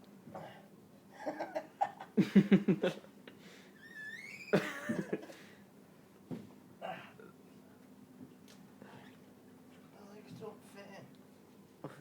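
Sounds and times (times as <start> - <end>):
people laughing: 1.2 - 3.0, 4.6 - 5.2.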